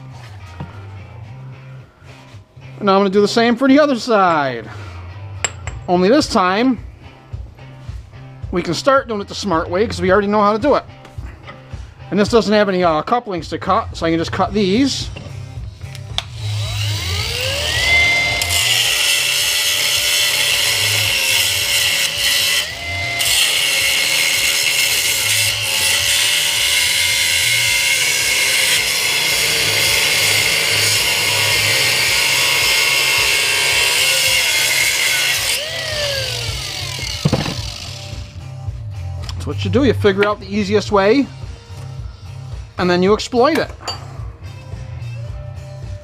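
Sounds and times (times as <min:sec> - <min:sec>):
power tool cutting fire hose: 0:15.9 - 0:38.4.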